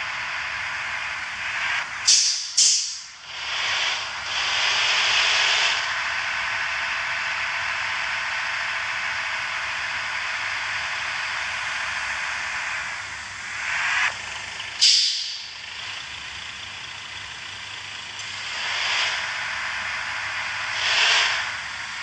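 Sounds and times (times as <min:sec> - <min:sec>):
compressed air hissing: 0:02.0 - 0:05.6, 0:14.8 - 0:15.6.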